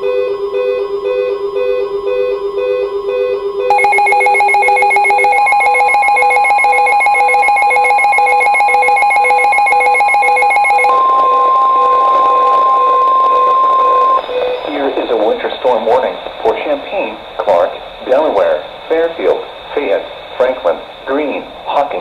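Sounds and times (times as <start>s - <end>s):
rapid electronic beeping alarm: 0.0s - 14.9s
steady high alarm tone: 0.0s - 14.9s
soft pulsing electronic tones: 0.0s - 15.1s.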